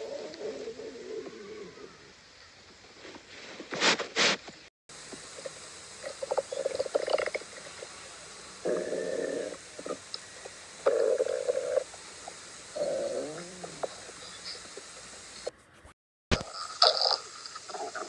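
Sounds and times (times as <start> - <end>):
stomach gurgling: 5.4 - 8.0, 8.7 - 14.9, 16.3 - 18.0.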